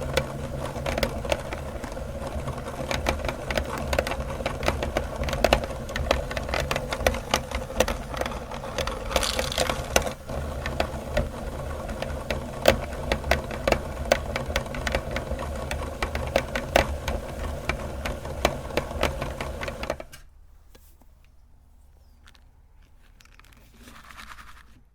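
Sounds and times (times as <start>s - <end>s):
meat grinder motor hum: 0.0s - 20.0s
candy cracking: 8.8s - 10.0s, 22.2s - 24.8s.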